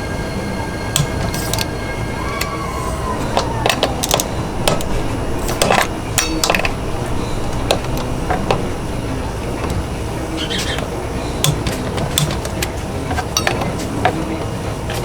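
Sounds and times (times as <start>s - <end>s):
low background hum: 0.0s - 15.0s
metallic clicks of hand tools: 11.4s - 14.2s.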